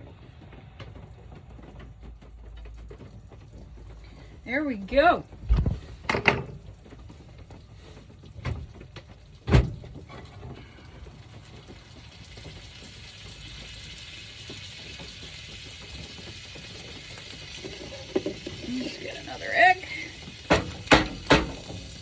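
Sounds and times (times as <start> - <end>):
egg sizzling in pan: 5.8 - 22.0
egg tapped on frying pan: 20.5 - 22.0.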